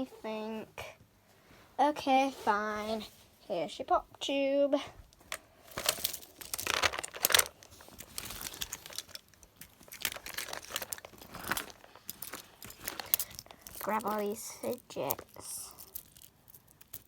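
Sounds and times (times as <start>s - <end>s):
plastic toys crinkling and clicking: 5.1s - 17.0s.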